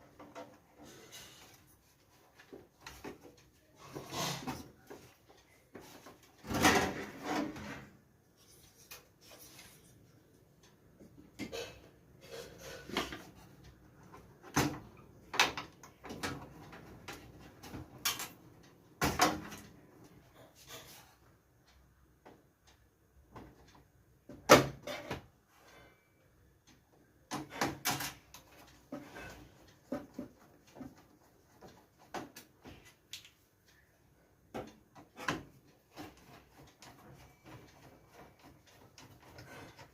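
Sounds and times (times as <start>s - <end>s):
computer parts knocking and scraping: 0.0s - 10.1s, 11.0s - 18.4s, 19.0s - 19.8s, 23.3s - 25.4s, 27.3s - 33.0s, 34.5s - 39.9s.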